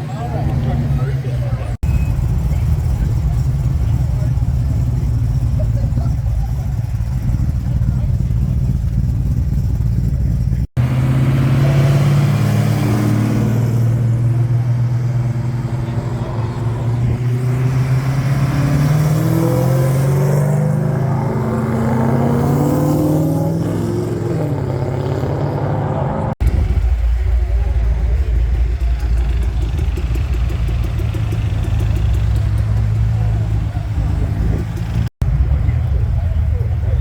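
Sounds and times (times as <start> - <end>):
car engine idling: 0.0 - 22.6, 23.8 - 37.0.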